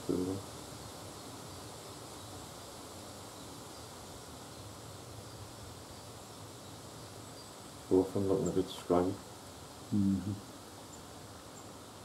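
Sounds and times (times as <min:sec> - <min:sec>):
background hiss: 0:00.0 - 0:12.0
faint low hum: 0:09.9 - 0:10.6.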